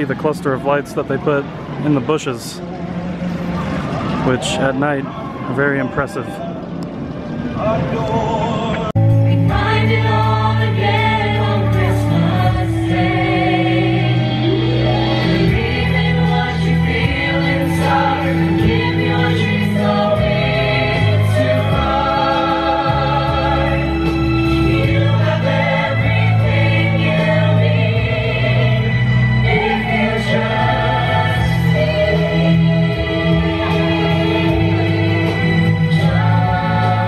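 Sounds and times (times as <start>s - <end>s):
choir singing: 7.6s - 37.0s.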